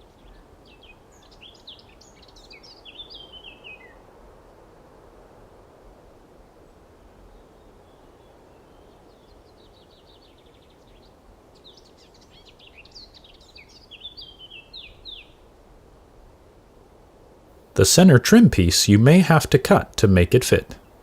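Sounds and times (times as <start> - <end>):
songbird singing: 0.0 - 4.0, 7.3 - 15.4.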